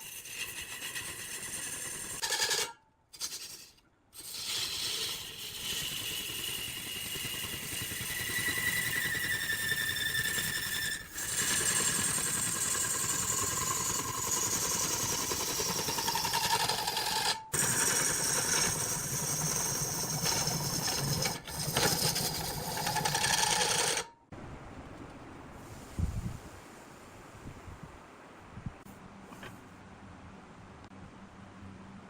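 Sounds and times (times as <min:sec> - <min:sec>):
woodworking machinery whining: 0:04.7 - 0:24.1.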